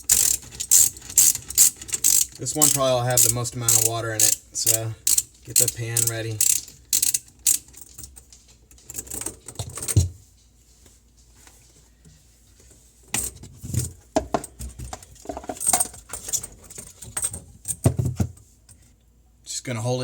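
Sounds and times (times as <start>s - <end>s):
metal tools clinking and rattling: 0.0s - 8.2s, 15.1s - 17.8s.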